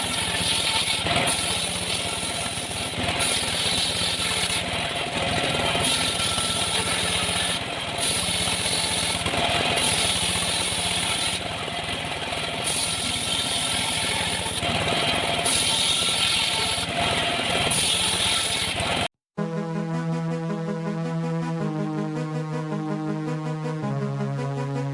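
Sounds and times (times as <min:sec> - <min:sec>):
engine saw cutting timber: 0:00.0 - 0:19.1.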